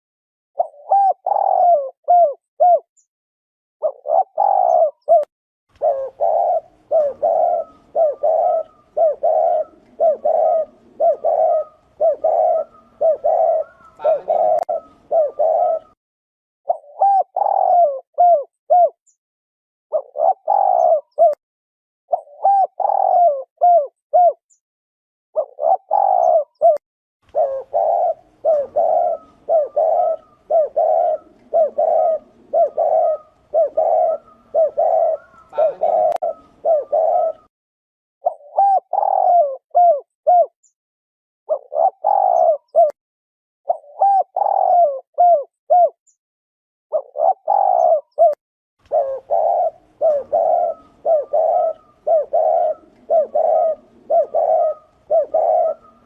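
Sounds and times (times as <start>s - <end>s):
dove cooing: 0.6s - 2.9s, 3.8s - 16.0s, 16.7s - 19.0s, 19.9s - 21.4s, 22.1s - 24.4s, 25.4s - 37.5s, 38.2s - 40.6s, 41.5s - 43.0s, 43.7s - 46.0s, 46.9s - 56.0s.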